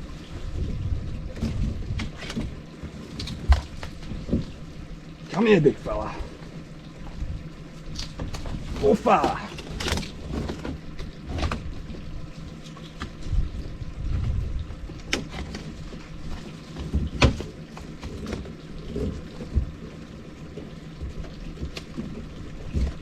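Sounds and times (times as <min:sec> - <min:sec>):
low rumble: 0:00.0 - 0:16.4.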